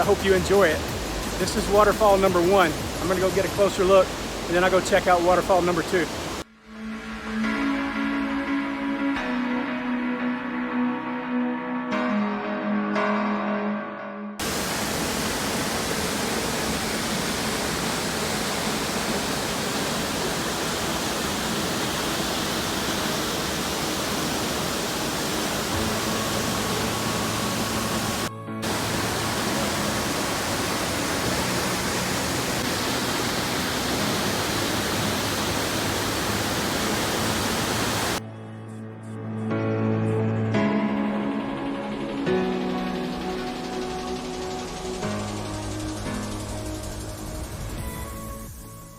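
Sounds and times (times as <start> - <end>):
waterfall rushing: 0.0 - 6.4, 14.4 - 38.2
soft background music: 0.0 - 14.2, 25.6 - 48.9.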